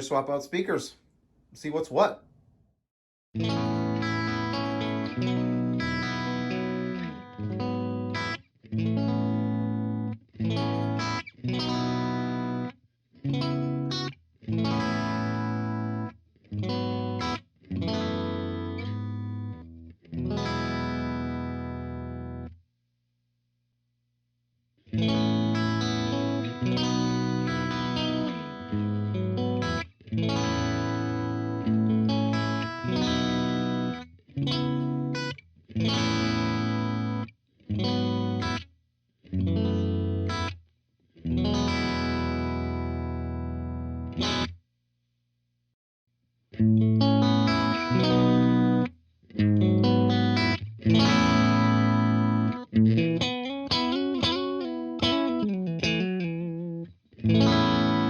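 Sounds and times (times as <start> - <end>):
distorted electric guitar: 46.8 - 58.0.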